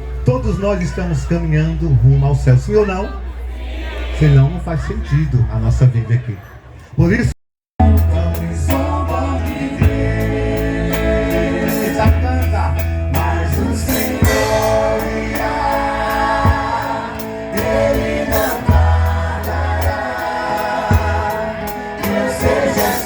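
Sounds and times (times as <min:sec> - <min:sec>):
drums keeping a beat: 0:07.8 - 0:23.0
heavy bass: 0:07.8 - 0:23.0
lead singer: 0:07.8 - 0:23.0
sustained keyboard chords: 0:07.8 - 0:23.0.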